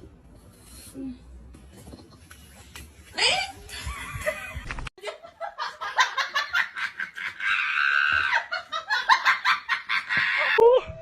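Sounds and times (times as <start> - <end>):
hearty laughter: 3.7 - 10.6.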